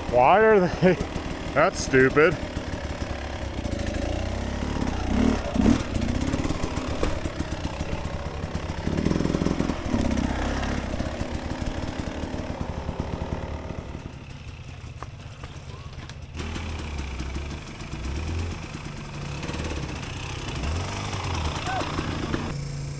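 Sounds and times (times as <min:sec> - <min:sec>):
dirt bike engine revving: 0:00.0 - 0:22.9.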